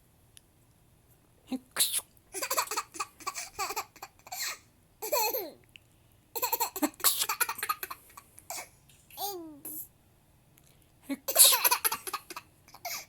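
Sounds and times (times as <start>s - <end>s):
girl laughing hard: 11.3s - 13.0s.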